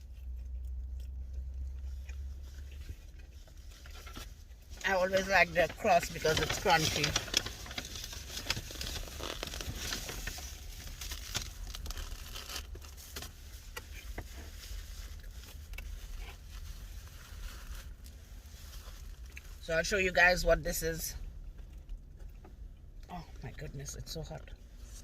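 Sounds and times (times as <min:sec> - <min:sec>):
chewing crunchy crust: 0:00.0 - 0:04.8, 0:06.0 - 0:19.6, 0:21.2 - 0:23.7.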